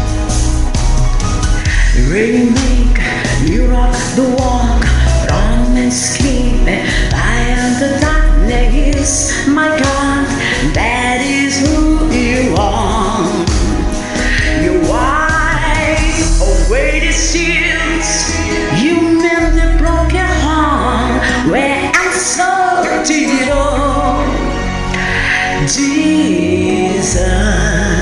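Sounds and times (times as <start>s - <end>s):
woman singing gospel song: 2.0s - 13.6s, 14.6s - 24.6s
backing music: 21.5s - 25.2s.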